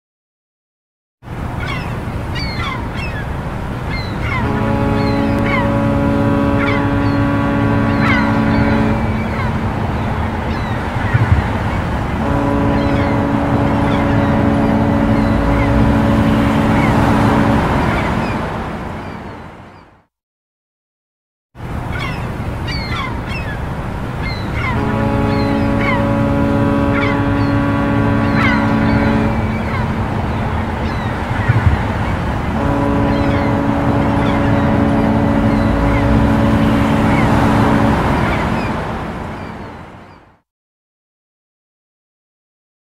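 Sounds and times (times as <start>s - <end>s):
birds chirping: 1.6s - 20.0s, 21.9s - 40.3s
low engine rumble: 3.5s - 19.7s, 24.6s - 39.9s
ship's horn blast: 4.0s - 20.0s, 24.2s - 40.3s.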